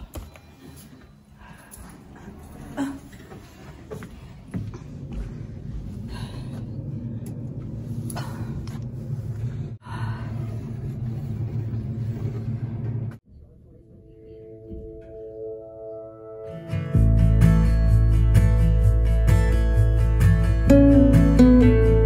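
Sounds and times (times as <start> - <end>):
low rumble: 4.7 - 13.2.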